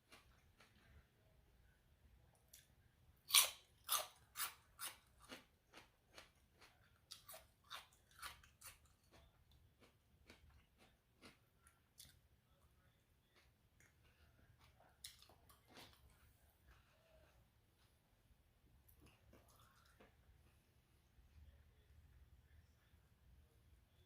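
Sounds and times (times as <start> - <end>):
chewing crunchy raw vegetables: 0.1 - 1.1, 3.3 - 12.3, 13.2 - 17.9.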